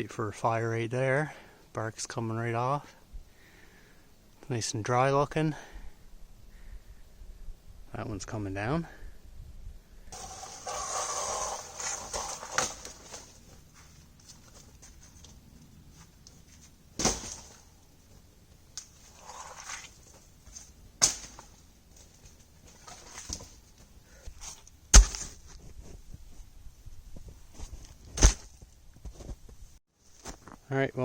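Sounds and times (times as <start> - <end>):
wood cracking: 10.2 - 13.4, 17.0 - 17.7
branches rustling and crackling: 10.2 - 26.4.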